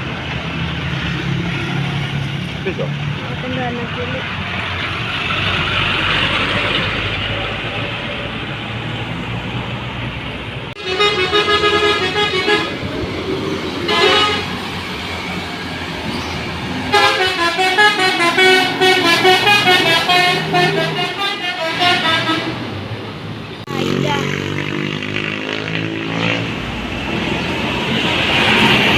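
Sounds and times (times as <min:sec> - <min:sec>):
bus engine running: 0:00.0 - 0:24.2
musical air horn melody: 0:10.8 - 0:12.8, 0:13.9 - 0:14.6, 0:16.9 - 0:22.6.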